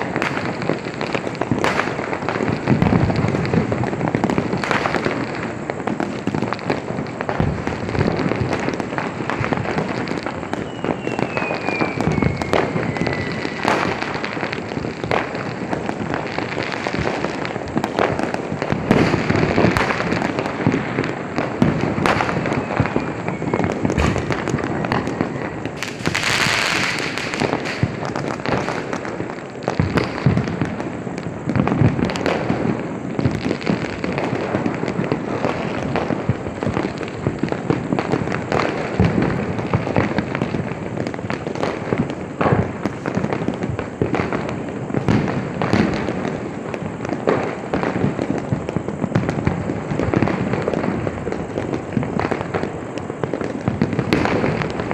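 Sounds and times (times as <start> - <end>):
firecrackers popping and banging: 0.0 - 54.9
falling whistle: 10.4 - 13.7, 22.5 - 25.6.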